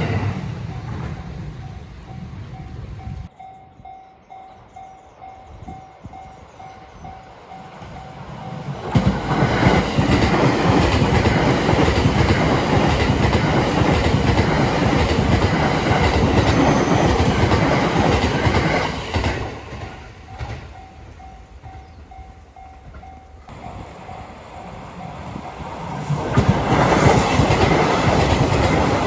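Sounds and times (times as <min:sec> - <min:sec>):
level-crossing warning bell: 0:00.0 - 0:10.1, 0:20.2 - 0:26.3
train wheels clattering: 0:08.1 - 0:29.0.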